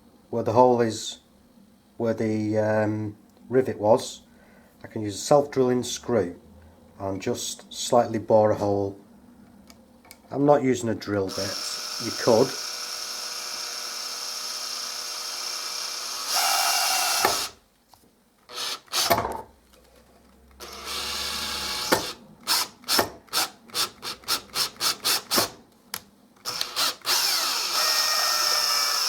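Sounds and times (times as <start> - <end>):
power drill driving screw: 11.3 - 17.6, 18.5 - 19.3, 20.6 - 25.6, 26.4 - 29.0.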